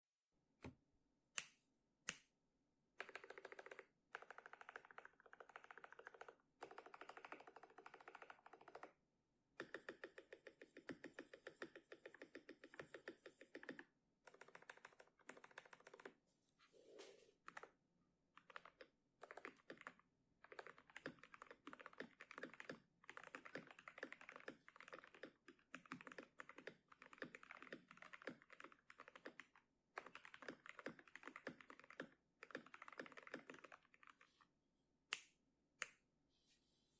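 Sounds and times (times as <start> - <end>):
mechanical keyboard typing: 3.0 - 9.0, 9.6 - 16.2, 18.4 - 34.2.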